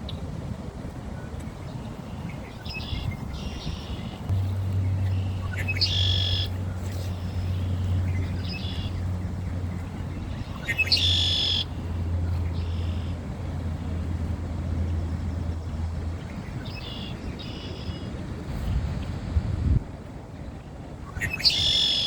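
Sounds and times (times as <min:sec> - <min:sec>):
steady low rumble: 0:00.0 - 0:21.3
songbirds singing: 0:01.2 - 0:19.2, 0:20.3 - 0:22.0.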